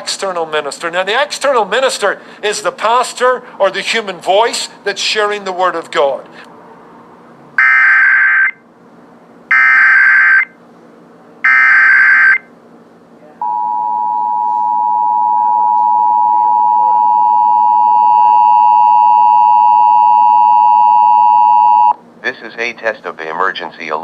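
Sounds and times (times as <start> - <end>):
two-tone alert signal: 11.5 - 12.4, 13.4 - 21.9.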